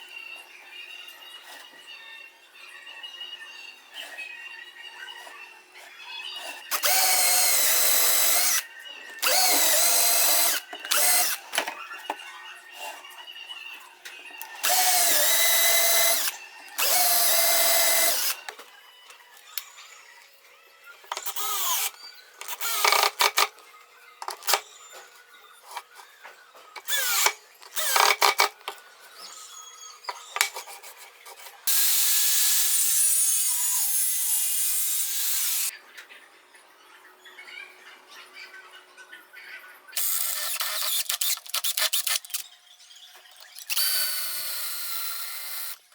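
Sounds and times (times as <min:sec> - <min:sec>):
electric power tool whining: 0:06.7 - 0:11.8, 0:14.5 - 0:18.5, 0:21.1 - 0:23.5, 0:24.2 - 0:24.6, 0:26.8 - 0:28.7, 0:31.7 - 0:35.7, 0:40.0 - 0:42.4, 0:43.4 - 0:45.8.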